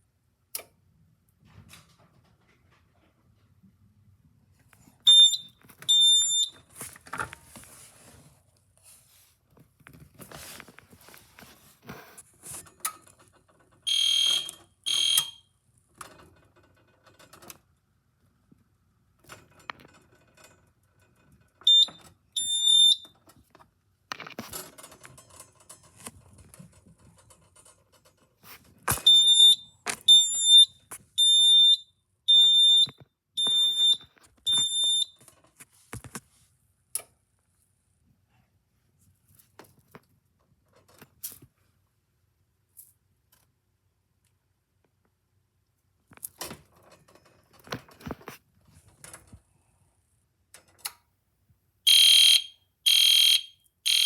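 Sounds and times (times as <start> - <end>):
fire alarm beeping: 5.1 - 6.6, 13.9 - 15.5, 21.7 - 23.2, 29.0 - 35.2, 51.9 - 54.0.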